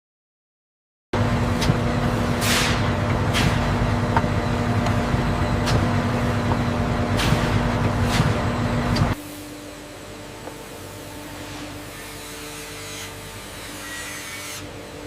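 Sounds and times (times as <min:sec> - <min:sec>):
quieter machine hum: 0:01.2 - 0:12.0
factory machinery humming: 0:01.2 - 0:15.0
short sharp machine bursts: 0:02.4 - 0:03.8.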